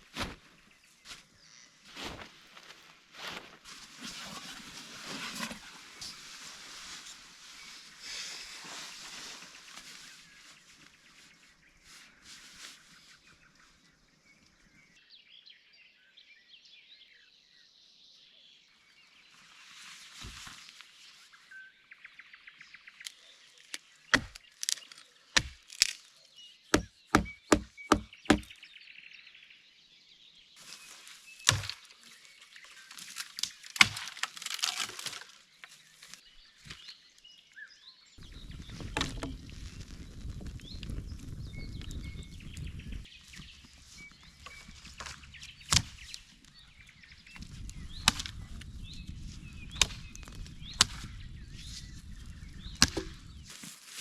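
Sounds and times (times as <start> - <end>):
birds chirping faintly: 4.3 - 54.0
wood chopping strikes: 24.1 - 26.0, 26.7 - 28.5, 31.4 - 31.8, 33.4 - 35.0, 43.4 - 46.3, 47.4 - 48.4, 49.7 - 51.1, 52.6 - 53.5.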